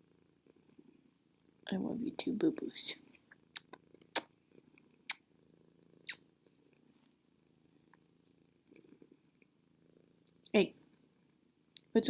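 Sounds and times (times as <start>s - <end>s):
cat purring: 0.0s - 12.0s.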